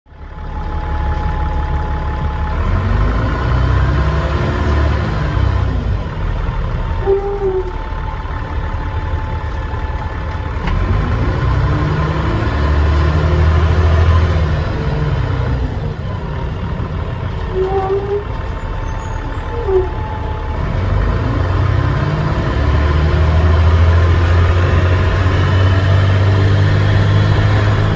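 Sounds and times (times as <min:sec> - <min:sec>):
bus diesel engine rumbling: 0:00.1 - 0:27.9
turbo whistle: 0:07.0 - 0:07.9, 0:18.9 - 0:20.3.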